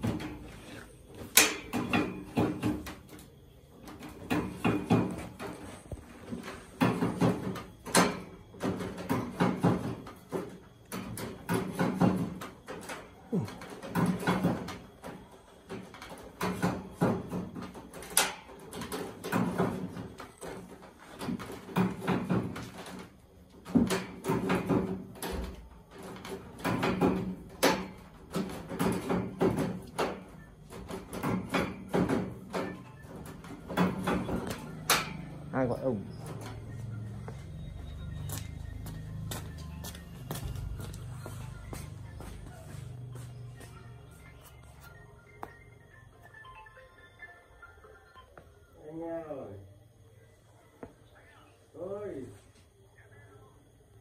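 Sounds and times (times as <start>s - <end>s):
hard objects knocking and clattering: 1.2s - 35.5s.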